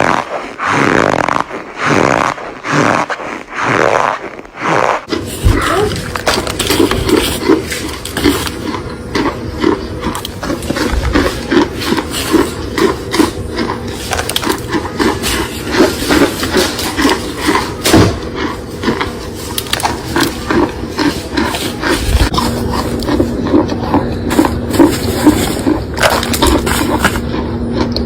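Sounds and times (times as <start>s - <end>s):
crunchy chewing: 0.0s - 28.0s.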